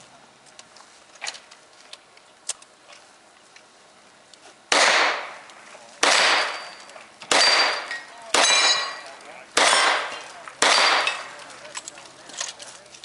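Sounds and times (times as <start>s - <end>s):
revolver shots with echo: 4.7s - 5.4s, 6.0s - 11.4s.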